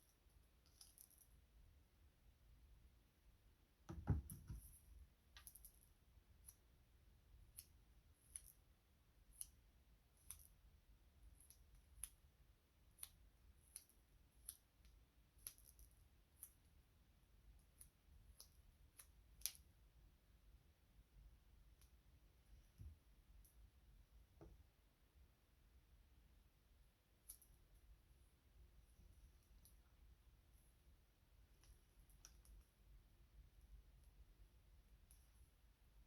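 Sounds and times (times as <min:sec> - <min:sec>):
soft knock: 0:03.9 - 0:04.7.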